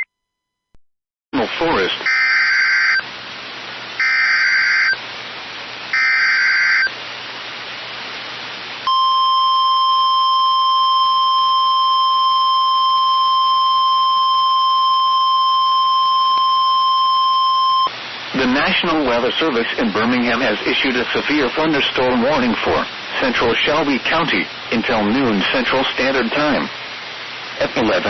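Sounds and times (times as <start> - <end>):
steady alarm tone: 2.1 - 3.0, 4.0 - 5.0, 6.0 - 6.9
screeching data bursts: 4.0 - 5.0, 6.0 - 6.9.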